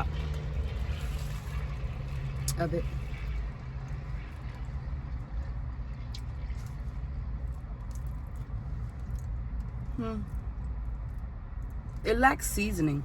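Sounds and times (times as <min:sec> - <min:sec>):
vehicle engine rumble: 0:00.0 - 0:13.0.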